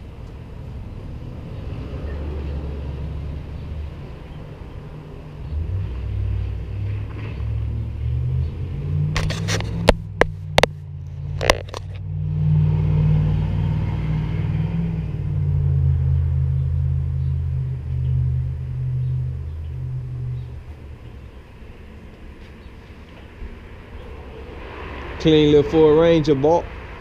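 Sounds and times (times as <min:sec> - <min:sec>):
car engine running: 0:09.1 - 0:12.2.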